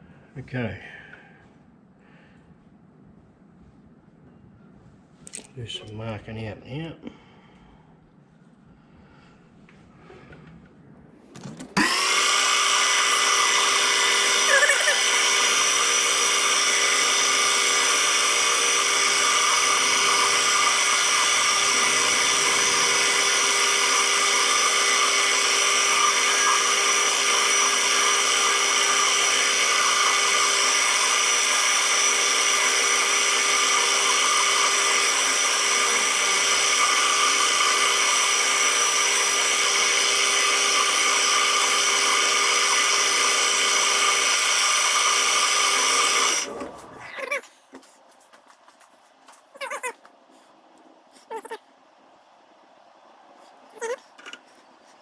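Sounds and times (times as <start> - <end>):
metal lathe whining: 11.8 - 46.8.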